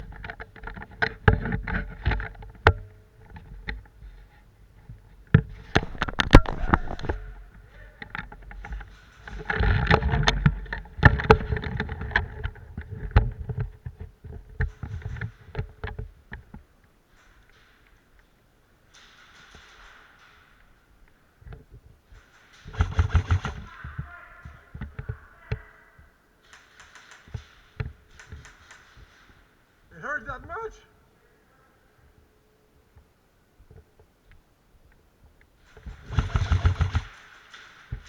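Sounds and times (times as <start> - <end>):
rumbling handling noise: 0.0 - 18.6
sharp clicks and knocks: 0.0 - 23.7, 26.4 - 29.6, 33.7 - 38.0.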